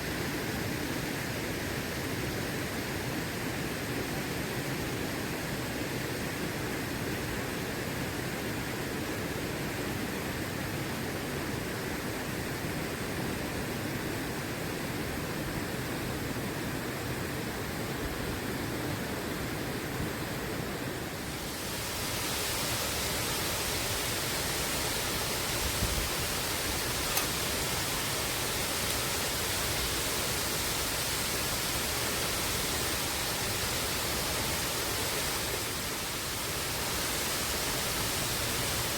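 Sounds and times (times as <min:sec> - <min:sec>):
waterfall rushing: 0:21.2 - 0:38.9.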